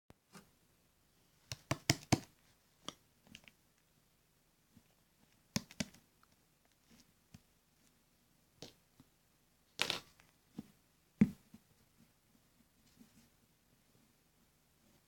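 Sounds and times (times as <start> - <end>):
sharp clicks and taps: 1.5 - 3.6, 5.5 - 6.4.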